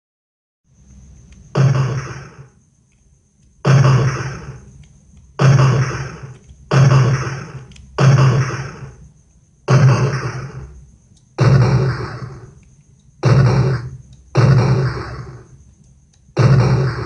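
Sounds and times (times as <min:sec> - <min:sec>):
gunshots: 0:01.6 - 0:02.5, 0:03.6 - 0:04.7, 0:05.4 - 0:09.0, 0:09.7 - 0:10.8, 0:11.4 - 0:12.6, 0:13.2 - 0:15.5, 0:16.4 - 0:17.0.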